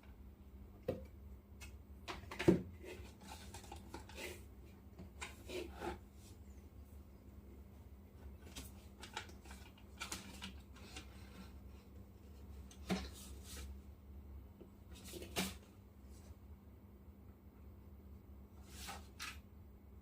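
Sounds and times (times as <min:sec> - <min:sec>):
rustling of cardboard and plastic: 0:02.1 - 0:06.4, 0:08.2 - 0:13.8, 0:14.9 - 0:16.3.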